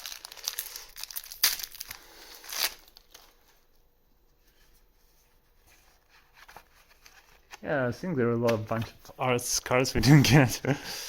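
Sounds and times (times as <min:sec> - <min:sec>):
foil wrapper crinkling and tearing: 0:00.0 - 0:03.6
faint handling sounds: 0:00.0 - 0:09.3.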